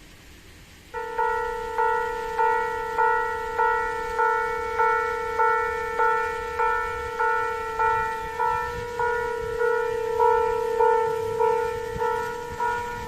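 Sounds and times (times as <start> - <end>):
level crossing alarm bell ringing: 1.0 - 13.0.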